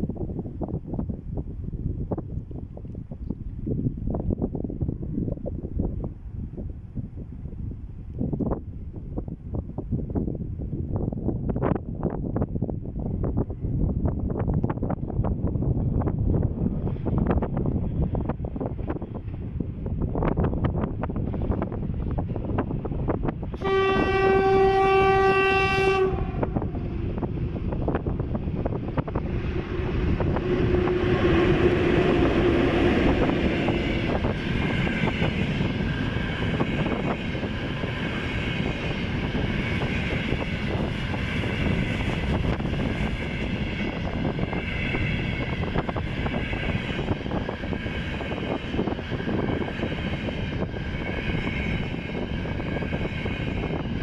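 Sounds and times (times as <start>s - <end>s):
freight train rolling past: 0.0s - 54.0s
locomotive horn blast: 23.6s - 27.2s, 29.1s - 35.4s.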